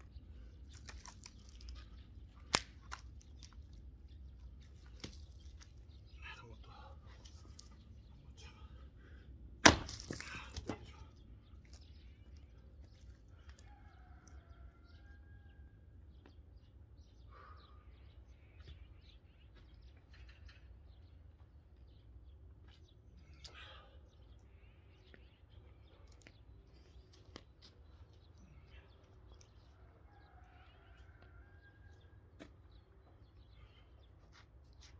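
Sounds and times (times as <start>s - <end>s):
wood crackle: 0.0s - 6.0s
axe splitting log: 9.6s - 10.8s.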